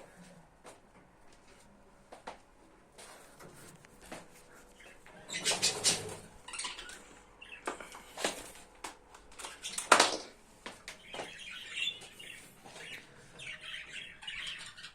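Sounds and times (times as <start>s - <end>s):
budgerigars chirping: 4.8s - 8.2s, 11.0s - 14.9s.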